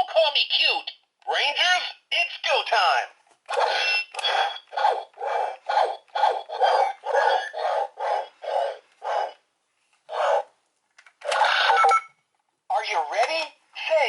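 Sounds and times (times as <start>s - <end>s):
toy electronic scratchy pulses: 3.5s - 8.6s, 11.2s - 11.9s.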